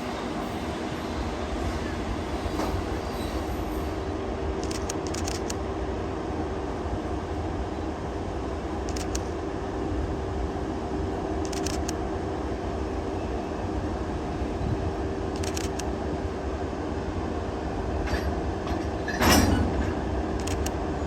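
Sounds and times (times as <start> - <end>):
electric locomotive hum: 0.0 - 21.0.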